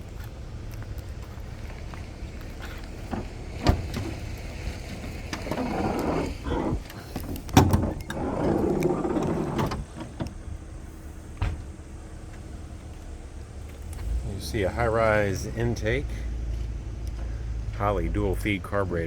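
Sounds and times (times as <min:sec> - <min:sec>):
scraping and rustling: 0:02.6 - 0:10.4
hood latch clicks: 0:05.3 - 0:10.4.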